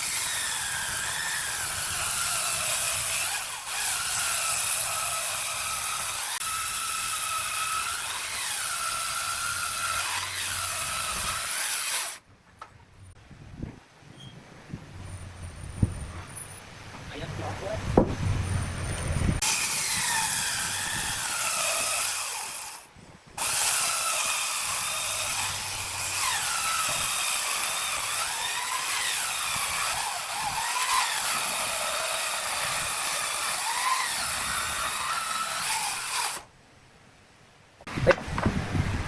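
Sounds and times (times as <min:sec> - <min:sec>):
power tool cutting wood: 0:00.0 - 0:12.2, 0:19.4 - 0:36.5.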